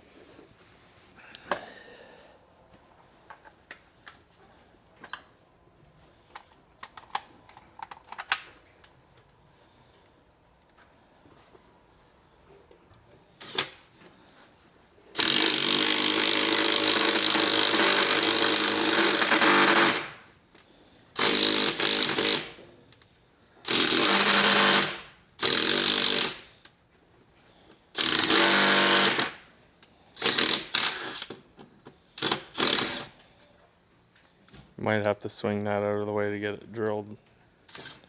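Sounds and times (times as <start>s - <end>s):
hammer drill boring into concrete: 13.4s - 13.7s, 15.2s - 20.2s, 21.2s - 22.6s, 23.7s - 26.5s, 28.0s - 29.4s, 30.2s - 31.3s, 32.2s - 33.2s.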